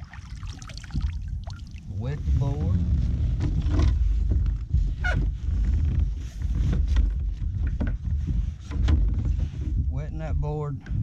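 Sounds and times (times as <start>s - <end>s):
water splashing and knocks: 0.0s - 4.6s
wind buffeting microphone: 0.0s - 11.0s.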